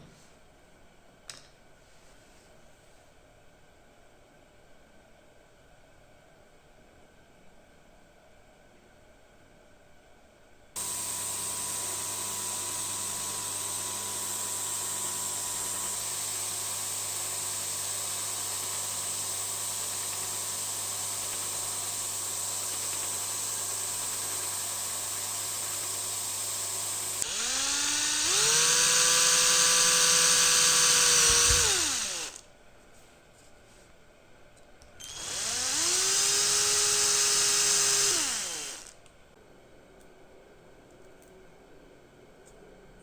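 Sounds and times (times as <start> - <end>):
power tools hissing hum: 26.8 - 32.4, 35.0 - 39.0
electric motor spinning up: 27.1 - 32.4, 35.0 - 39.0.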